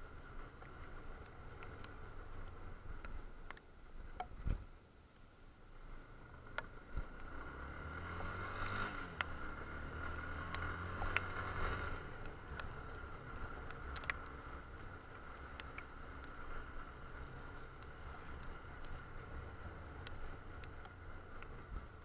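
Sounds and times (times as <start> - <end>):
raindrops ticking on helmet: 0.0 - 22.0
motorcycle engine revving: 7.0 - 14.9.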